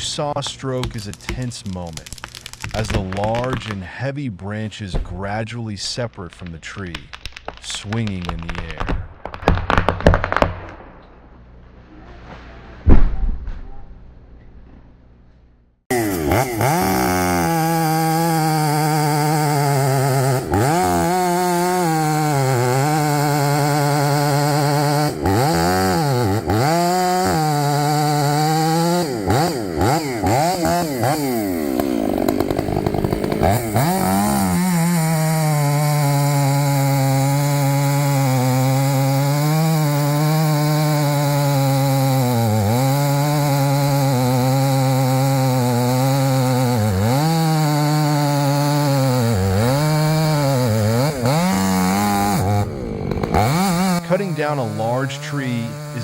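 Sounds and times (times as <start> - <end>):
chainsaw engine at high revs: 0.0 - 3.7, 15.9 - 56.0.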